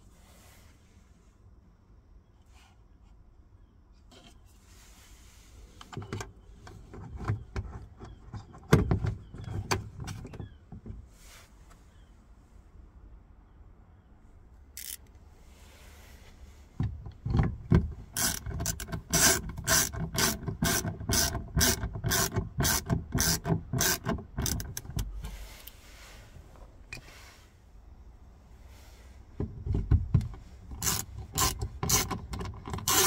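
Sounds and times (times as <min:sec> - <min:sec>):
hand ratchet clicking: 0:14.8 - 0:15.0, 0:18.2 - 0:24.8, 0:30.7 - 0:33.0.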